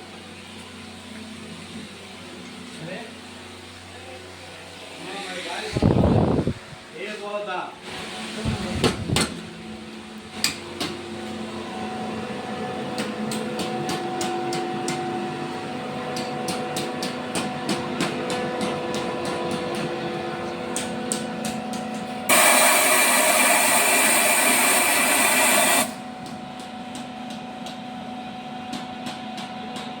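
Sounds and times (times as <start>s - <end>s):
machinery humming: 22.2s - 26.2s
compressed air hiss: 22.3s - 26.0s.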